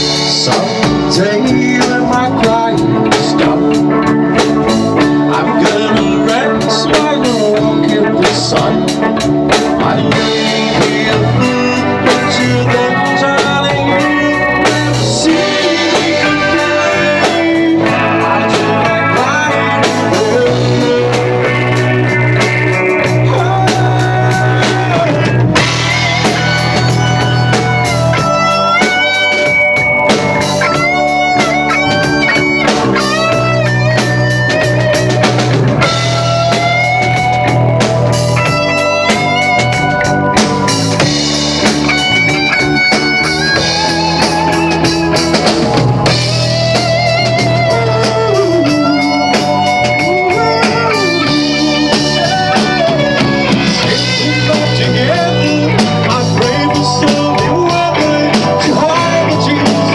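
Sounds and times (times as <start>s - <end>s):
bass guitar: 0.0s - 59.9s
drum kit: 0.0s - 59.9s
lead guitar melody: 0.0s - 59.9s.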